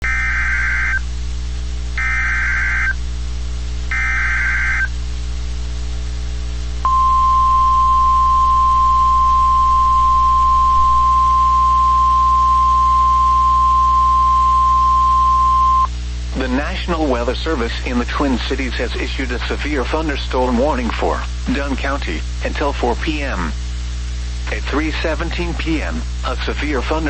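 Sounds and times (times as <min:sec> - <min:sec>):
steady warning alarm tone: 0:00.0 - 0:01.0, 0:02.0 - 0:03.0, 0:03.9 - 0:04.9, 0:06.8 - 0:15.9
faint low hum: 0:00.0 - 0:27.0
warbling digital data tones: 0:03.9 - 0:04.9.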